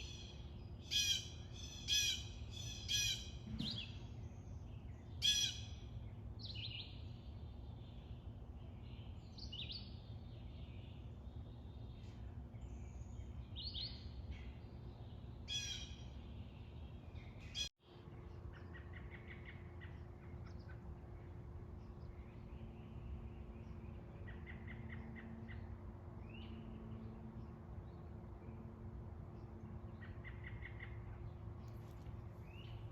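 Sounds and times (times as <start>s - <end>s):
wild birds calling: 0.0s - 6.8s, 14.2s - 27.6s
low steady hum: 0.0s - 32.9s.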